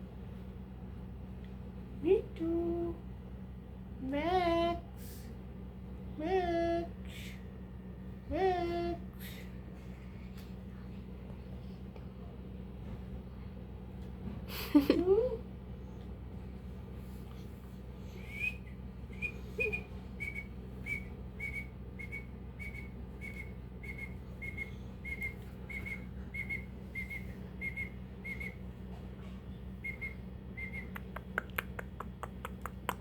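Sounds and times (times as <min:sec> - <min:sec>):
parrot whistled chirps: 0:18.2 - 0:28.6, 0:29.8 - 0:31.0.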